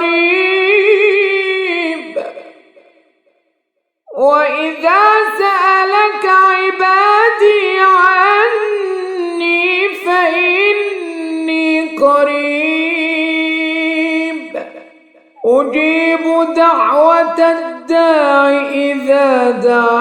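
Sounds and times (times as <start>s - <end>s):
man reciting melodically: 4.3s - 20.0s.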